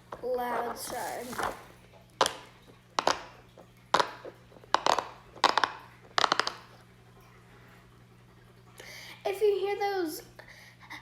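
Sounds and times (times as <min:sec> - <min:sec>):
fidget toy pops: 0:03.0 - 0:03.3, 0:03.9 - 0:06.7.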